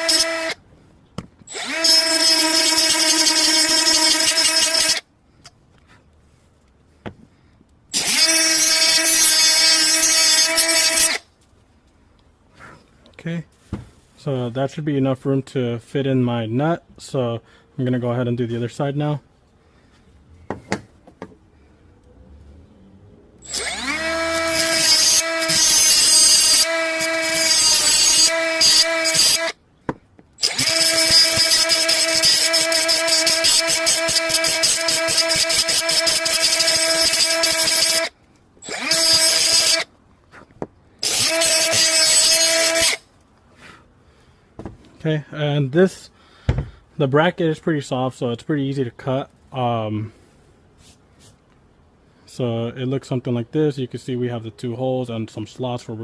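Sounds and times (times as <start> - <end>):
grinder cutting whine: 0.0 - 0.6, 1.5 - 5.0, 8.0 - 11.2, 23.4 - 29.6, 30.4 - 39.9, 41.0 - 43.0.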